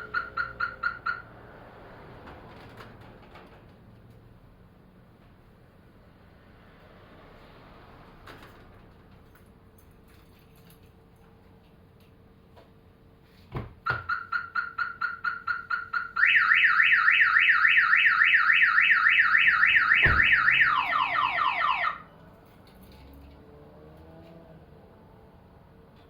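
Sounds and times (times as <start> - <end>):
car alarm siren: 0.0 - 1.4, 14.0 - 22.1
thump: 20.0 - 20.5.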